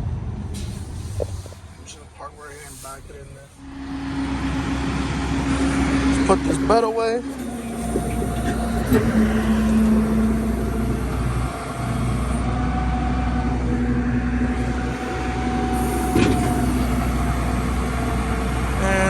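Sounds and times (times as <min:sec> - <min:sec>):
truck engine running: 0:00.0 - 0:19.0.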